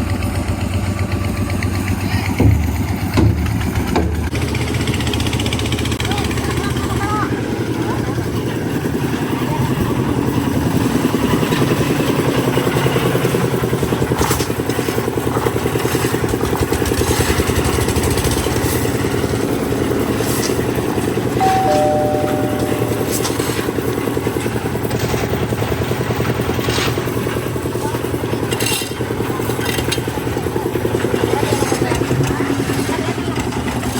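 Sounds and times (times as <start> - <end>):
two-note tone: 21.4 - 23.9.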